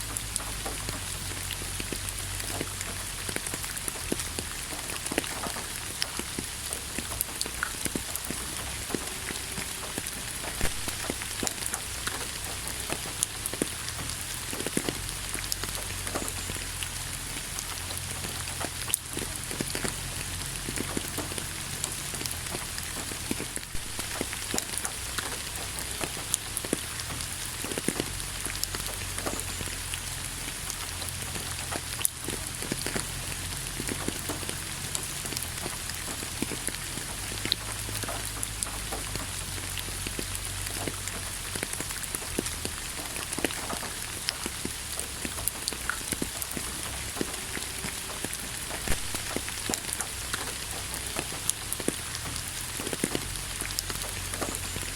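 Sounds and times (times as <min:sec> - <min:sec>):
rain falling: 0:00.0 - 0:54.9
raindrops ticking on a surface: 0:00.0 - 0:54.9.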